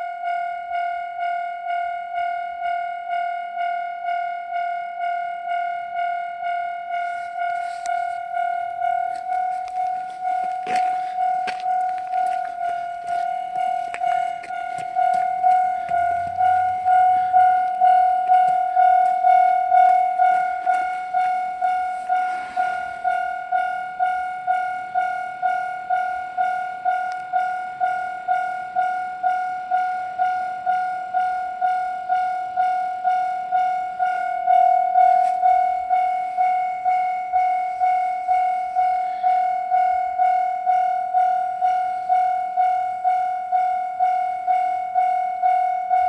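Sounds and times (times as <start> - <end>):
level-crossing warning bell ringing: 0.0 - 46.0.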